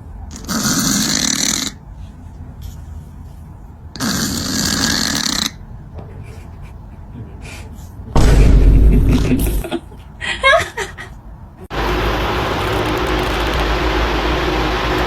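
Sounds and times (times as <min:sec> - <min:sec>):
loud snoring: 0:00.3 - 0:01.8, 0:04.0 - 0:05.6.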